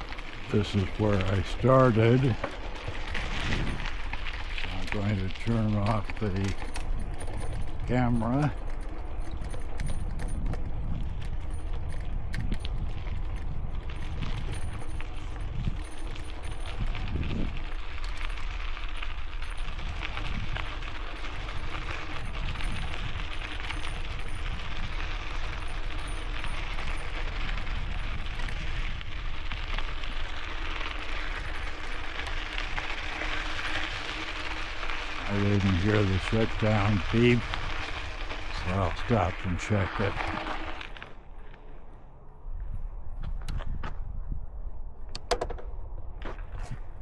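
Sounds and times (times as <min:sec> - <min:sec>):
wind buffeting microphone: 0:00.0 - 0:47.0.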